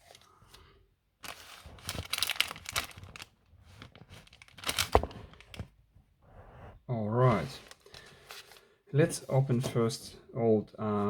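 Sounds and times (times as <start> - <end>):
rustling and crinkling: 1.2 - 10.0.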